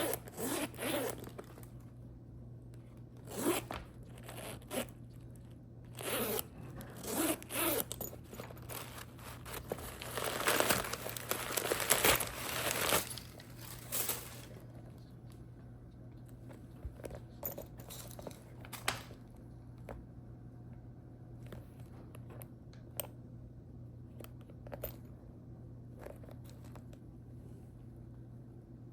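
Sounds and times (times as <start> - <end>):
bag zipper rasping: 0.0 - 1.3, 3.2 - 5.0, 6.0 - 10.8.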